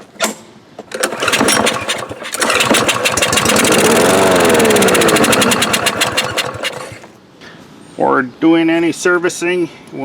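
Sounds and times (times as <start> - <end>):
lawn mower engine running: 0.9 - 7.2.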